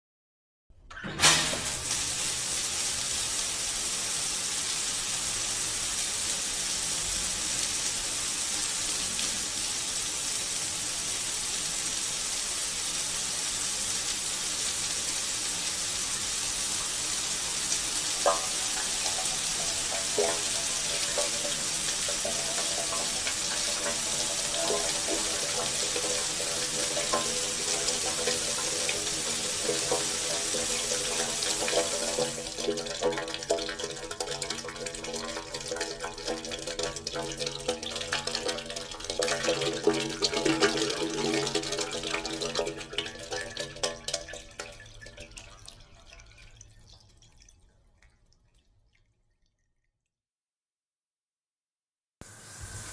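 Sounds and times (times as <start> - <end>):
shower water spray hissing: 1.2 - 32.5, 52.2 - 52.9.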